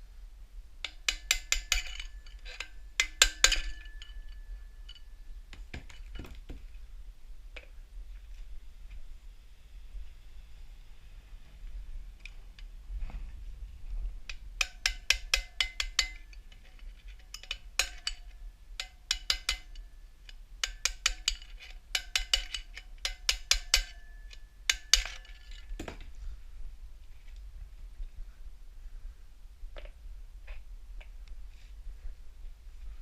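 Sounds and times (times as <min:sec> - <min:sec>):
hammer striking metal: 0:14.6 - 0:16.4, 0:20.6 - 0:26.0.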